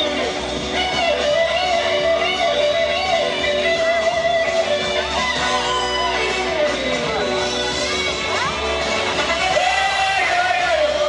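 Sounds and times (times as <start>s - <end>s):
dance music: 0.0s - 11.0s
strummed guitar: 0.0s - 11.0s.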